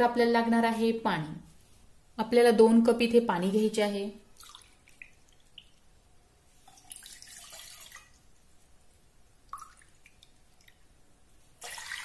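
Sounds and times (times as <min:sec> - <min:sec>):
water pouring into pan: 0:06.7 - 0:08.2, 0:11.6 - 0:12.0.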